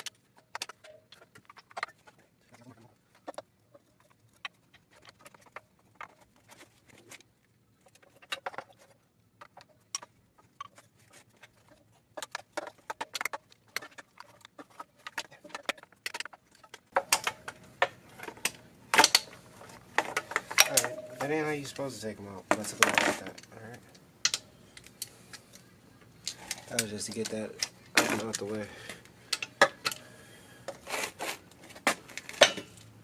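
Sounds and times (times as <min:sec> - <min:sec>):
clinks of tools and metal parts: 0:20.0 - 0:25.6, 0:29.3 - 0:30.1, 0:32.2 - 0:32.9.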